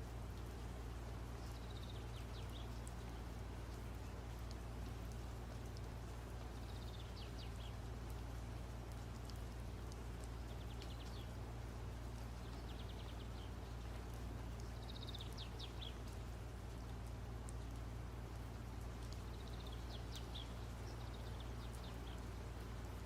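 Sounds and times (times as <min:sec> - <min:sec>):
birds chirping: 0:12.0 - 0:16.3, 0:19.0 - 0:23.0.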